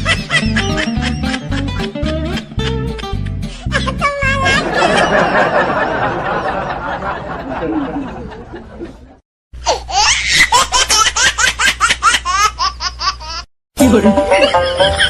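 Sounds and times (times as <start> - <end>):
high rapid laughter: 0.0 - 9.0
busy mix of sound: 13.8 - 15.0.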